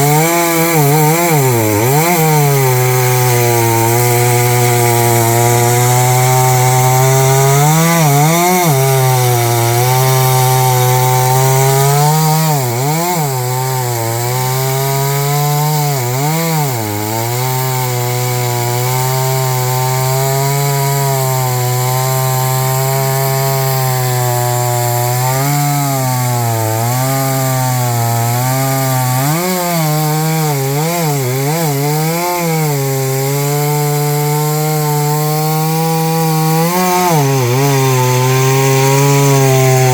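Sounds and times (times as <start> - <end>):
chainsaw cutting wood: 0.0 - 39.9.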